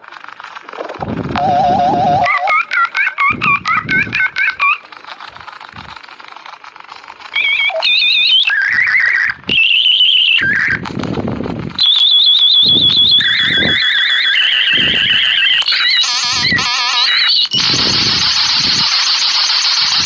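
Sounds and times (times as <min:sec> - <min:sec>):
dial-up modem tones and hiss: 0:00.7 - 0:04.9, 0:12.0 - 0:20.0.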